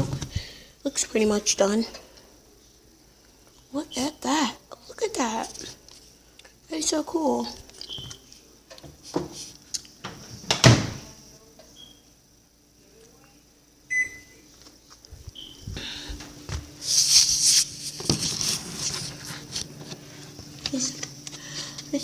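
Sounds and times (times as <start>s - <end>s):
microwave humming: 13.7s - 16.8s, 17.8s - 22.0s
short beeps: 13.9s - 14.4s.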